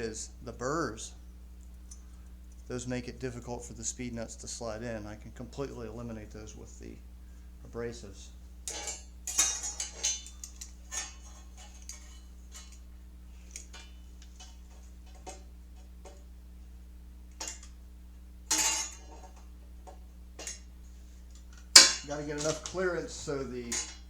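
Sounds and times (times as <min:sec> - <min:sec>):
steady low hum: 0:00.0 - 0:24.0
metal tools clicking and clinking: 0:08.7 - 0:12.8.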